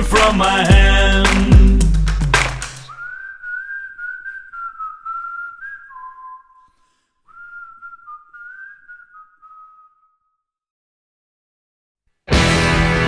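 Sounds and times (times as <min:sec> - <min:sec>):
person whistling a melody: 0:00.0 - 0:10.2.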